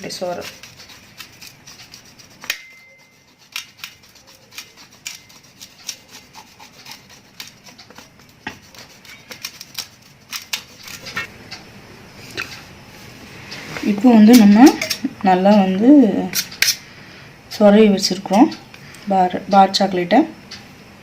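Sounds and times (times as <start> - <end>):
chocolate being scraped: 0.0 - 11.3.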